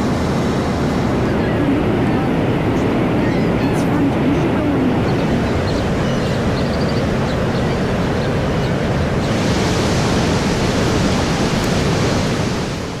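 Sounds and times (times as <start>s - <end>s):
water pouring down a waterfall: 9.2s - 13.0s.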